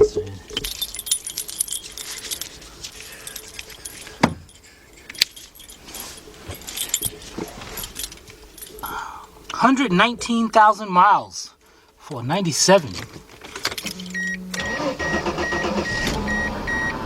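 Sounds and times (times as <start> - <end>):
car keys jangling: 0.4 - 9.0, 12.9 - 14.9.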